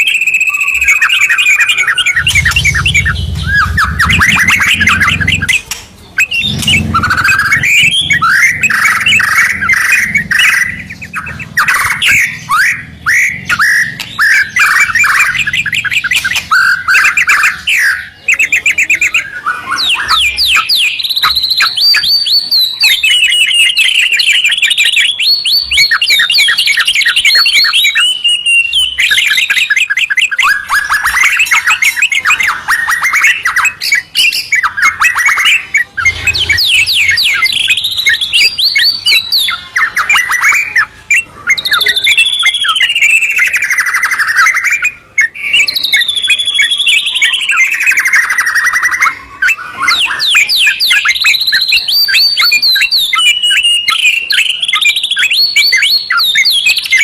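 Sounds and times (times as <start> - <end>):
birds singing trills and whistles: 0.0 - 57.0.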